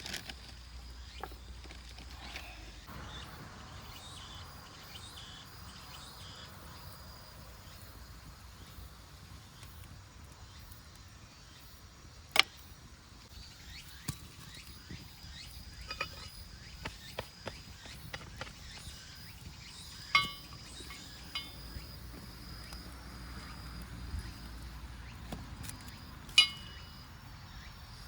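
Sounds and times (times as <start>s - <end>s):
high insect trill: 0.1s - 28.0s
light clicks and clinks: 15.8s - 16.4s, 20.0s - 24.3s, 25.6s - 27.0s.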